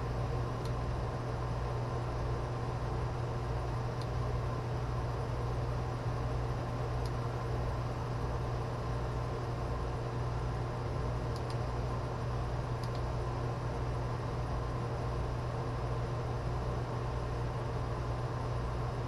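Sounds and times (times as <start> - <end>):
steady low hum: 0.0 - 19.0
faint small ticks: 12.8 - 13.0.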